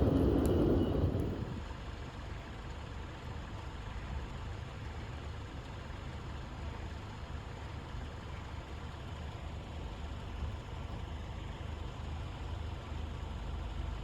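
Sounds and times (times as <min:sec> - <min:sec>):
engine idling: 0:00.0 - 0:02.8.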